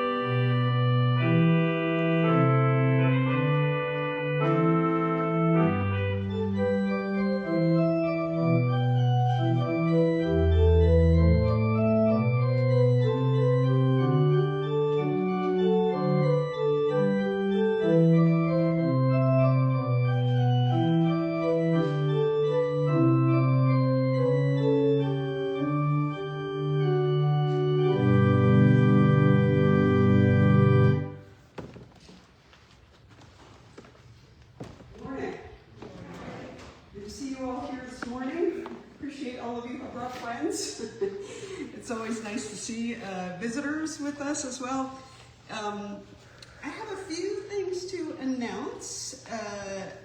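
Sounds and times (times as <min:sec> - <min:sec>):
church organ playing chords: 0:00.0 - 0:31.4.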